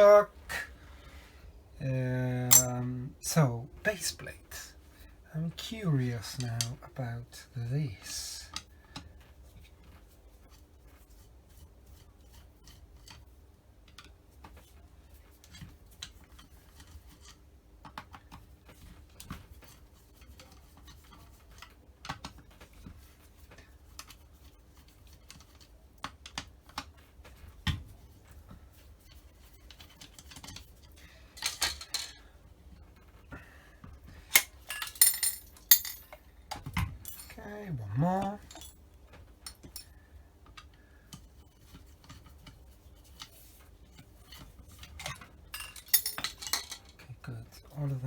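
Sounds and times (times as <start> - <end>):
metal parts clinking: 2.5 - 2.8, 31.4 - 32.2, 34.3 - 36.2, 37.0 - 37.4, 38.1 - 38.8, 39.5 - 39.9, 45.0 - 47.0.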